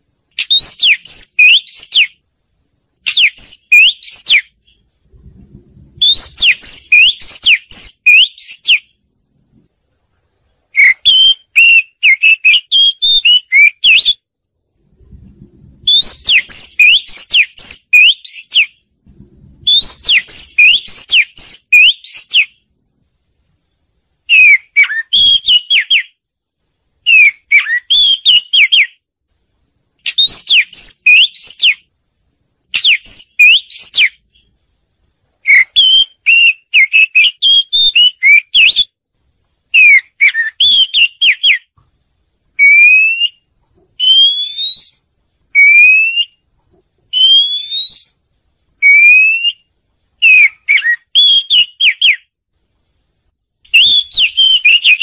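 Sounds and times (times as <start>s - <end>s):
bird singing whistled phrases: 0.4s - 2.2s, 3.0s - 4.8s, 6.0s - 8.9s, 10.7s - 14.2s, 15.8s - 18.8s, 19.6s - 22.6s, 24.3s - 26.2s, 27.0s - 29.0s, 30.0s - 31.9s, 32.7s - 34.5s, 35.4s - 38.9s, 39.7s - 41.7s, 42.6s - 45.0s, 45.6s - 46.4s, 47.1s - 48.2s, 48.8s - 52.3s, 53.7s - 55.0s.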